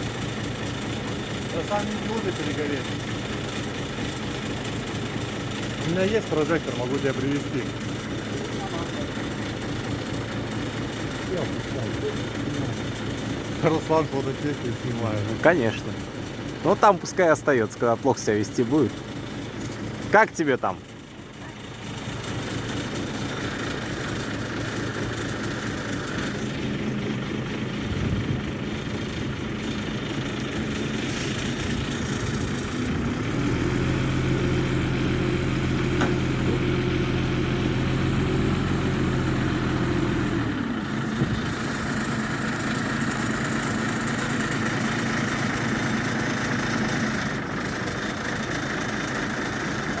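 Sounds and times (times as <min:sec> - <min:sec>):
engine running: 0:00.0 - 0:50.0.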